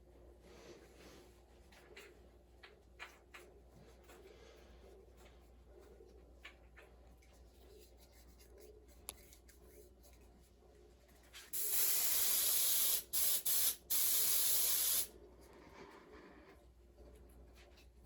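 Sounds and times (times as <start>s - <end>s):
aerosol spray bursts: 11.6s - 15.1s.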